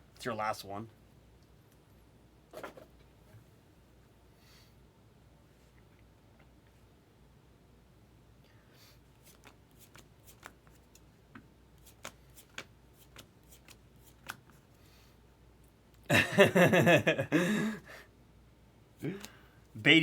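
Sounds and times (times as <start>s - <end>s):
trading cards clicking and sliding: 9.2s - 11.1s, 11.8s - 14.6s.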